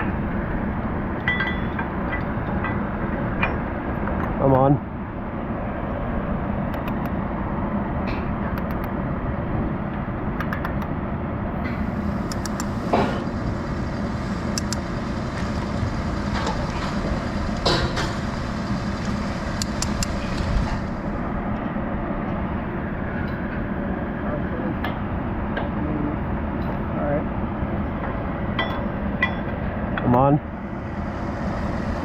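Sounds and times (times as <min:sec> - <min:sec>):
heavy engine droning: 0:11.3 - 0:32.0
sharp metallic clanks: 0:14.6 - 0:20.0.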